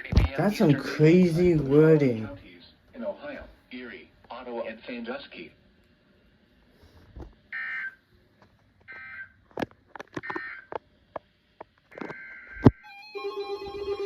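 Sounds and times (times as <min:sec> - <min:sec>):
sharp clicks and crackles: 0:09.5 - 0:12.7.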